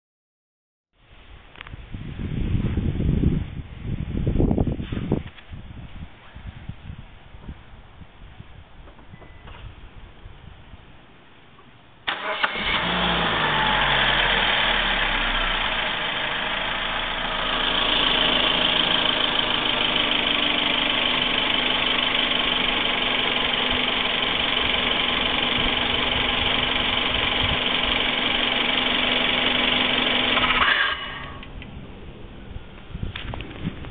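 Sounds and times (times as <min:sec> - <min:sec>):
faint noise after ignition off: 0:11.6 - 0:31.8
car engine starting and idling: 0:12.0 - 0:33.9.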